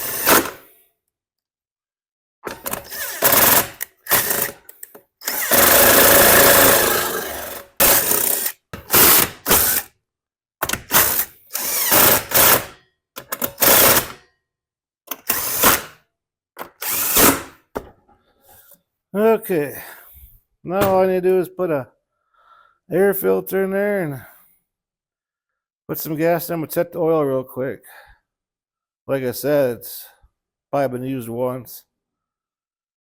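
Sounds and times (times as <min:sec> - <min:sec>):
power drill-driver bursts: 0:00.0 - 0:00.6, 0:02.5 - 0:09.9, 0:10.7 - 0:12.8, 0:13.4 - 0:14.2, 0:15.1 - 0:15.9, 0:16.6 - 0:17.5.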